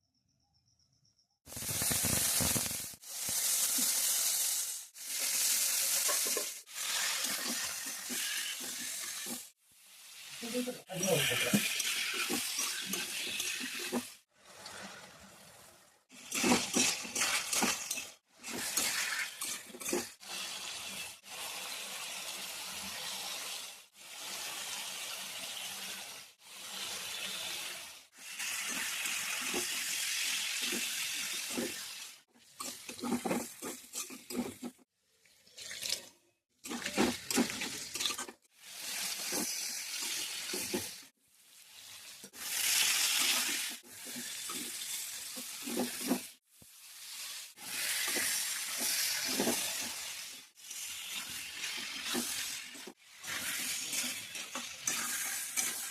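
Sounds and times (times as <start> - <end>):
water running from a tap: 10.2 - 14.3, 41.8 - 46.3, 47.1 - 55.9
utensils clattering against a pot: 16.2 - 20.2, 32.5 - 34.8, 36.6 - 38.4, 51.7 - 55.9.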